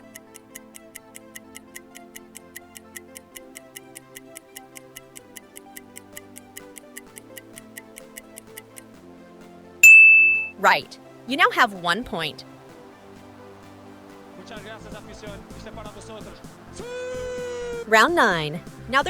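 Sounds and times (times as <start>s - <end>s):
clock ticking fast: 0.0s - 8.9s, 14.4s - 19.0s
soft background music: 0.0s - 19.0s.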